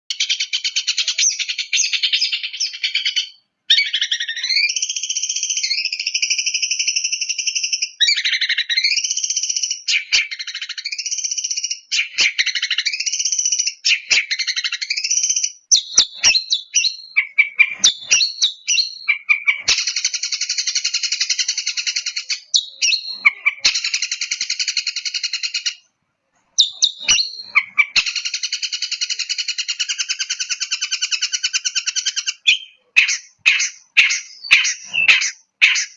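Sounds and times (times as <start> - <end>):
shrike singing buzzy trills: 0.1 - 25.8, 26.6 - 35.9
sharp bird clicks: 26.6 - 35.9.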